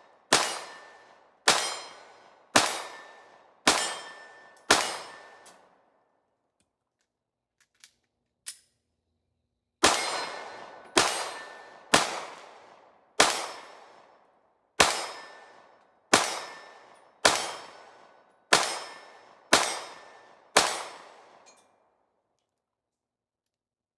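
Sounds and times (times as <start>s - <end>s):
gunshots with ringing tail: 0.0s - 5.4s, 9.8s - 14.1s, 14.8s - 21.4s.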